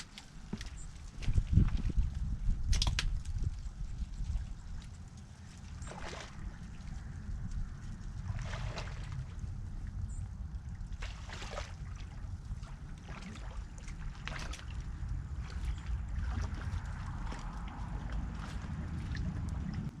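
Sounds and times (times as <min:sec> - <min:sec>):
faint clicks and rustles: 0:00.0 - 0:08.4
low uneven rumble: 0:00.0 - 0:20.0.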